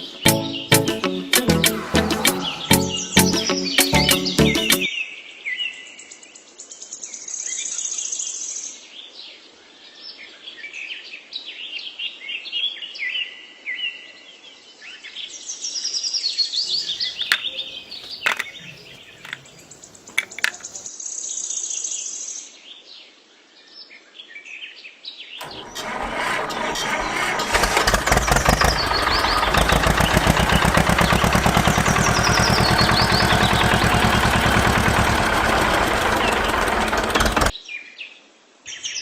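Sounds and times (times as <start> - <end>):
birds chirping and twittering: 0.0 - 4.9, 16.6 - 20.9, 27.7 - 37.5
sharp clicks: 17.2 - 20.8.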